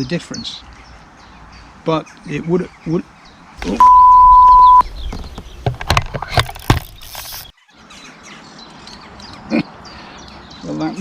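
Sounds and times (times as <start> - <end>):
faint bird chirps: 0.0 - 5.6
electronic bite alarm: 3.6 - 4.8
fishing rod and reel clicks: 6.2 - 7.5.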